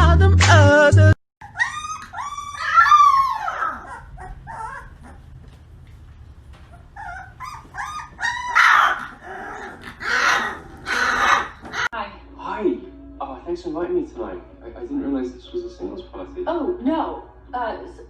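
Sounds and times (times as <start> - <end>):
dog whining and yipping: 1.4 - 5.4, 6.7 - 11.9
dog barking: 7.0 - 11.9.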